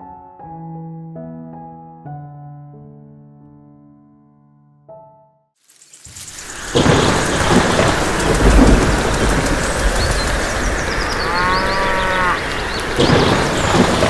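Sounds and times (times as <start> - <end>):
heavy rain falling: 5.8 - 14.0
rumbling thunder: 6.3 - 14.0.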